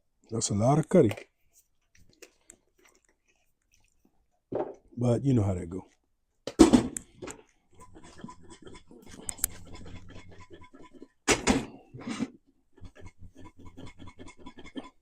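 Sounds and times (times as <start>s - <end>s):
person chewing popcorn: 1.3s - 4.4s, 7.0s - 11.2s.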